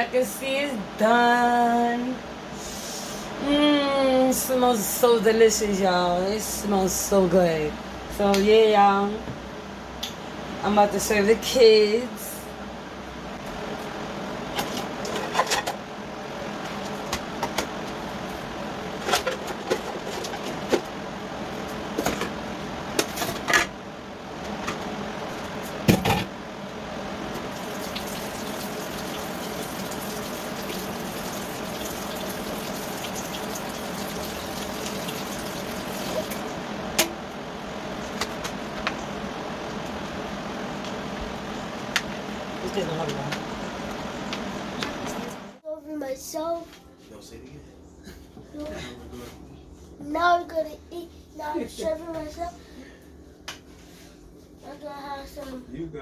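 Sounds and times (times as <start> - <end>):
running tap water: 27.3 - 36.6.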